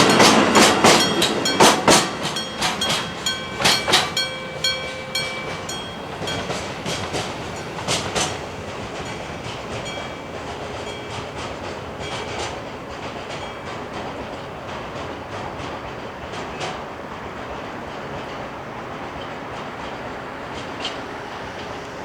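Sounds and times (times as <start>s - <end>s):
level crossing bell ringing: 0.0s - 12.5s
freight wagons clacking over rail joints: 0.0s - 18.4s.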